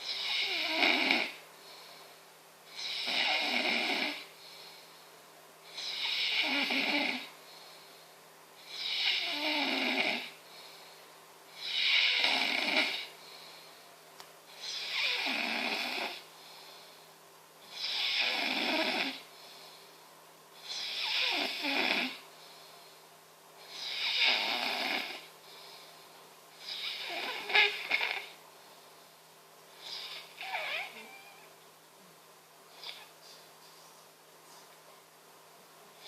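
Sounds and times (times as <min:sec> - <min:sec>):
heavy snoring: 0:00.0 - 0:01.4, 0:02.7 - 0:04.3, 0:05.7 - 0:07.3, 0:08.6 - 0:10.4, 0:11.6 - 0:13.1, 0:14.5 - 0:16.3, 0:17.7 - 0:19.3, 0:20.6 - 0:22.2, 0:23.7 - 0:25.3, 0:26.6 - 0:28.4
soft breathing: 0:01.4 - 0:02.4, 0:04.2 - 0:05.9, 0:07.3 - 0:08.8, 0:10.3 - 0:11.6, 0:13.0 - 0:15.0, 0:16.2 - 0:17.3, 0:19.2 - 0:20.2, 0:22.2 - 0:23.8, 0:25.2 - 0:31.5, 0:32.7 - 0:35.1.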